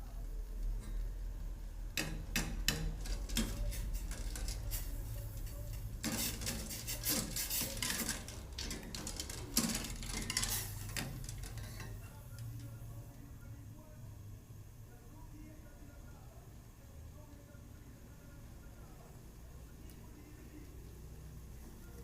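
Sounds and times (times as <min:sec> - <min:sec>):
utensil scraping a cooking pot: 0:02.0 - 0:12.2.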